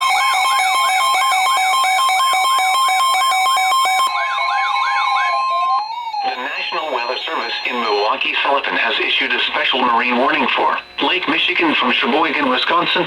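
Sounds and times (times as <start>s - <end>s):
warbling siren alarm: 0.0s - 8.3s
steady alert tone: 4.0s - 8.2s.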